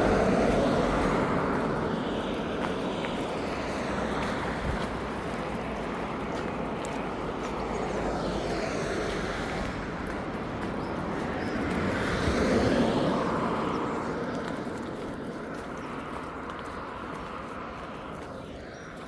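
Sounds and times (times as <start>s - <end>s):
road traffic hiss: 0.0s - 15.0s
vehicle passing: 0.0s - 18.2s.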